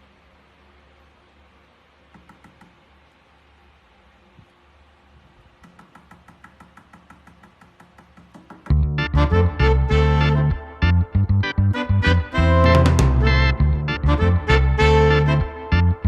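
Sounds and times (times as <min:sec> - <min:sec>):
loud swing music: 0:08.7 - 0:16.0.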